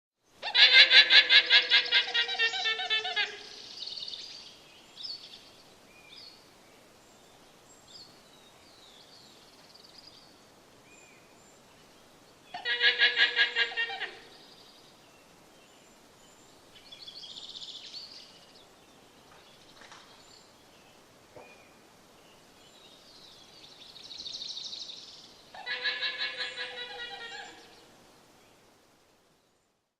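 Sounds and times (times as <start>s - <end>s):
faint high calls and chirps: 22.8s - 27.9s
guanaco stuttering bleats: 25.5s - 27.7s.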